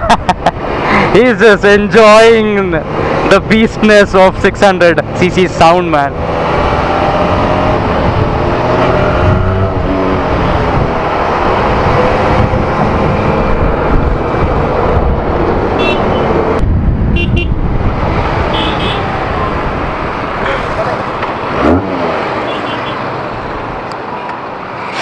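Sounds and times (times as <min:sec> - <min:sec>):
road and wind noise: 0:00.0 - 0:25.0
motorcycle engine revving: 0:06.1 - 0:16.6
horn beeps: 0:15.8 - 0:16.3, 0:17.2 - 0:17.6.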